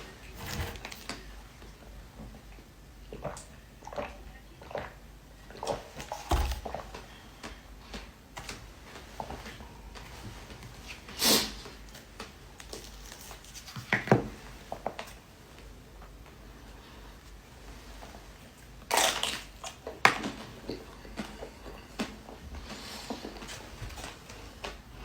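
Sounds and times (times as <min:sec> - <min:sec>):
eating crunches and mouth noises: 0:18.9 - 0:21.4.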